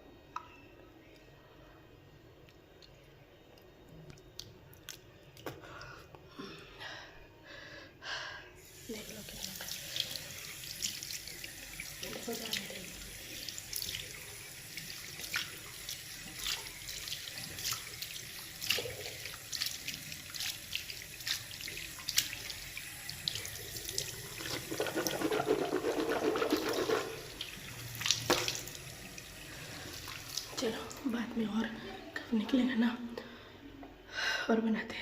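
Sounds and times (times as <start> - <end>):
tap water running into sink: 8.7 - 31.0
water splashes: 15.1 - 31.1.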